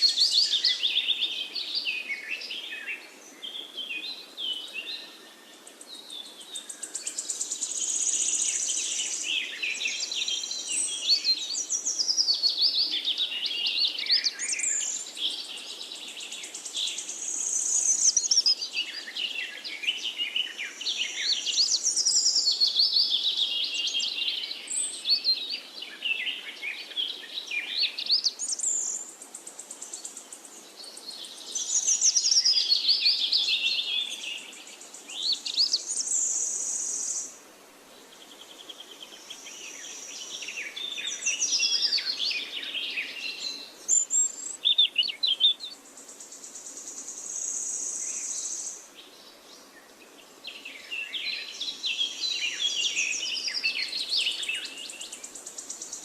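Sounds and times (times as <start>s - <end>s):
faint background hiss: 0.0s - 56.0s
songbirds singing and chirping: 0.0s - 56.0s.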